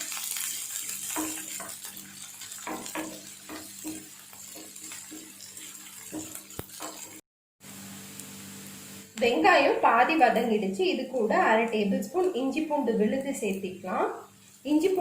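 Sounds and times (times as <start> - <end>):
food sizzling in hot oil: 0.0 - 15.0
spatula scraping a pan: 0.1 - 7.2.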